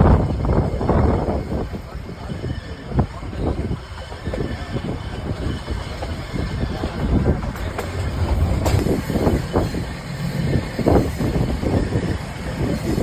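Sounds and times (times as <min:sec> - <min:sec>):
train carriages rumbling: 0:00.0 - 0:13.0
knocks of wheels on track: 0:07.2 - 0:09.4.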